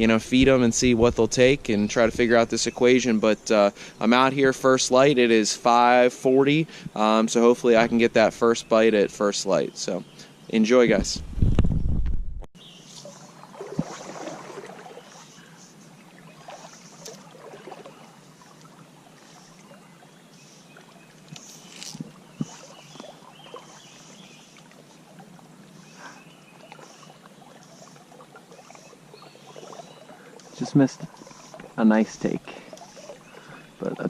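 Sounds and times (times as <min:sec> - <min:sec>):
stream water sloshing: 0:12.6 - 0:34.0
small splashes and knocks: 0:12.9 - 0:15.3, 0:16.3 - 0:18.8, 0:20.8 - 0:23.7.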